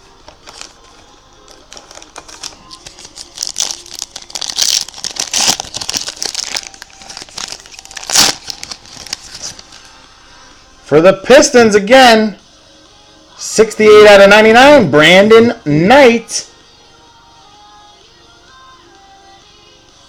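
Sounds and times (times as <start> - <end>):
cards clicking: 0.2 - 3.8
plastic packaging crinkling: 0.2 - 10.0.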